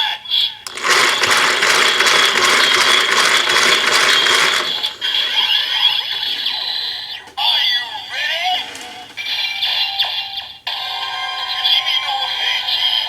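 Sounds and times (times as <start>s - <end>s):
toy ratchet whirring: 0.6s - 6.8s.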